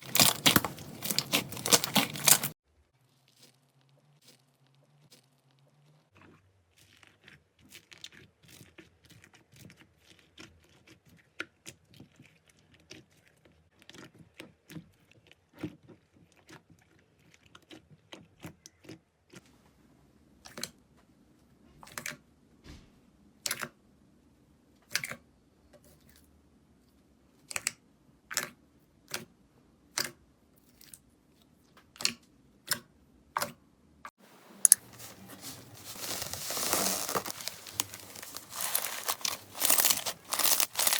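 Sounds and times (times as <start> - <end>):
slime crackling and clicking: 0.0 - 2.5
slime popping: 0.0 - 2.5.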